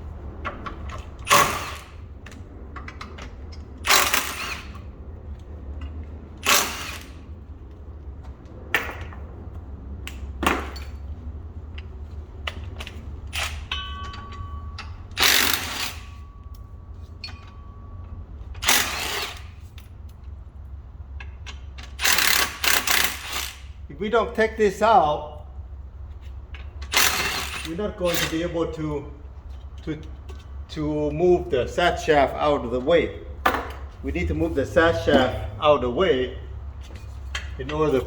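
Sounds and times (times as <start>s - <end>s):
steady low hum: 0.0s - 38.0s
ratchet wrench ratcheting: 3.8s - 4.8s, 6.4s - 7.2s, 15.1s - 16.2s, 18.6s - 19.6s, 21.4s - 23.8s, 26.8s - 28.4s.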